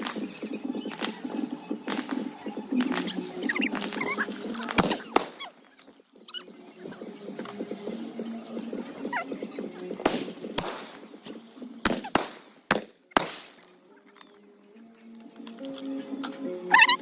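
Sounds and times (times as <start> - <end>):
firecrackers cracking: 0.0 - 5.6, 8.7 - 13.8
faint background music: 0.0 - 17.0.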